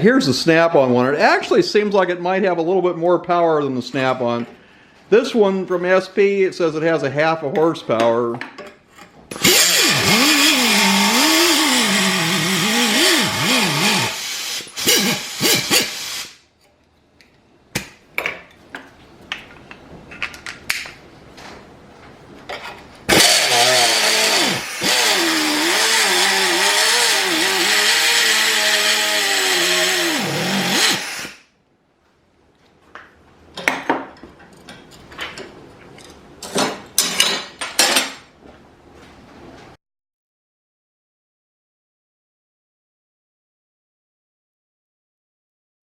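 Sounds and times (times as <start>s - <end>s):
air cut-off tool running: 9.4s - 16.4s, 23.1s - 31.4s.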